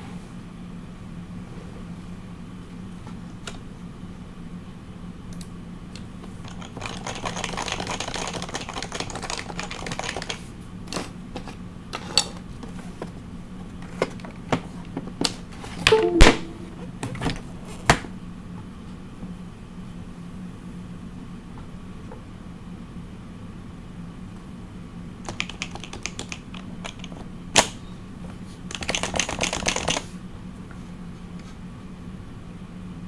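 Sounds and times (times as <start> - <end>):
keyboard typing: 15.9 - 16.7.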